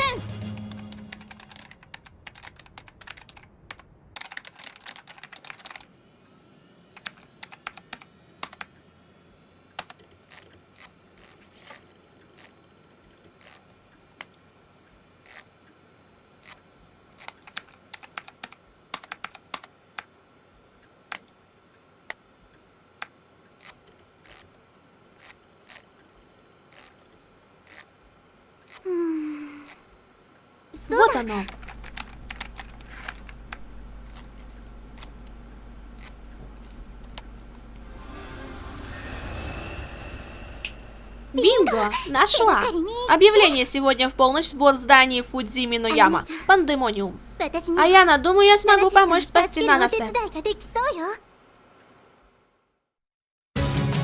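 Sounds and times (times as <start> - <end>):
typing on computer keyboard: 1.2 - 5.9, 7.0 - 8.7, 17.2 - 20.1, 31.5 - 33.4.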